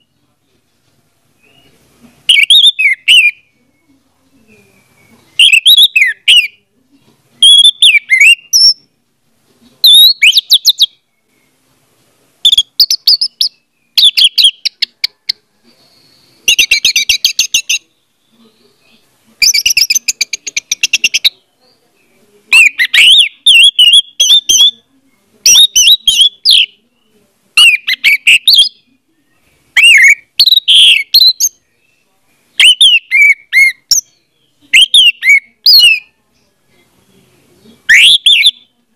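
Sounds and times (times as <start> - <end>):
thrush singing whistled phrases: 2.3 - 3.6, 4.8 - 6.6, 7.4 - 8.9, 9.8 - 11.1, 12.4 - 17.8, 19.4 - 21.3, 22.5 - 24.8, 25.4 - 26.8, 27.6 - 28.8, 29.8 - 31.6, 32.6 - 36.1, 37.9 - 38.7.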